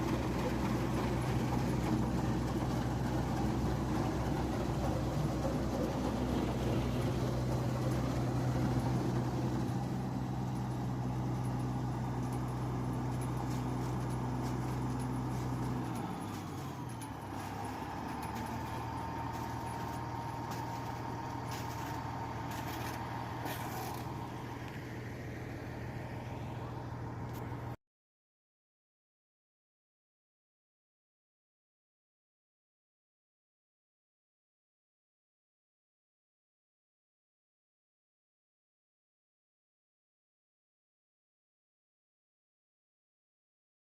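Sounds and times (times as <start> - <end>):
diesel engine running: 0.0 - 27.8.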